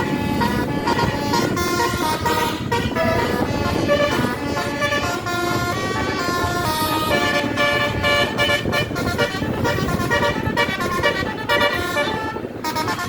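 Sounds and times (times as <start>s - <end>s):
bus engine rumble: 0.0s - 13.0s
bus horn playing a fast melody: 0.0s - 13.0s.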